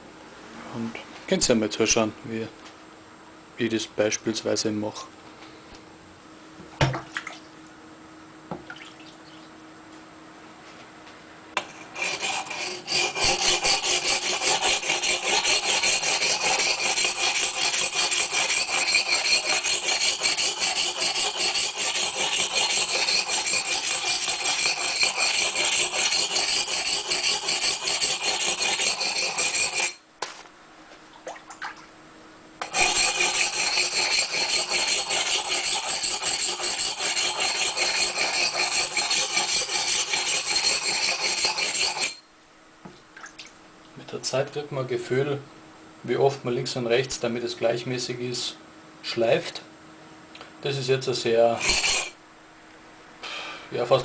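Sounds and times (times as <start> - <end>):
axe grinding on whetstone: 11.6 - 30.0, 32.6 - 42.3, 51.6 - 52.2.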